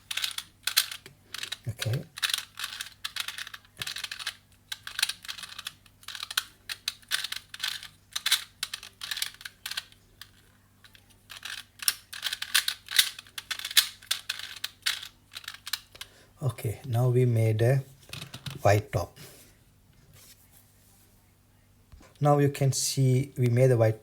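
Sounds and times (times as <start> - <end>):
puzzle cube layers clicking: 0.1 - 10.4, 11.3 - 16.0.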